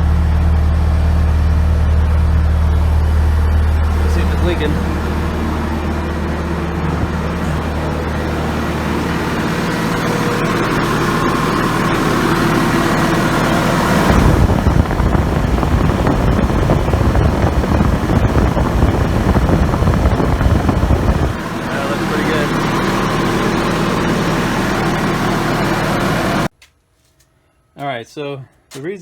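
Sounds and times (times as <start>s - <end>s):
diesel engine running: 0.0s - 26.5s.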